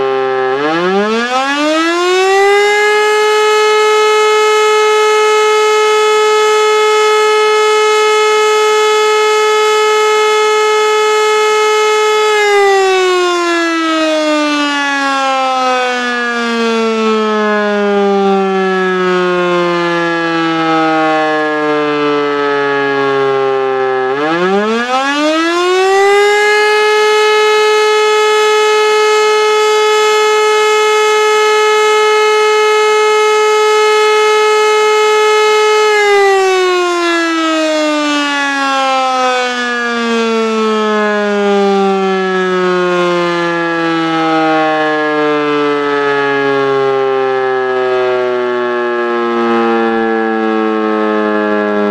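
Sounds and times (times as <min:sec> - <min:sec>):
electromechanical siren wailing: 0:00.0 - 0:51.9.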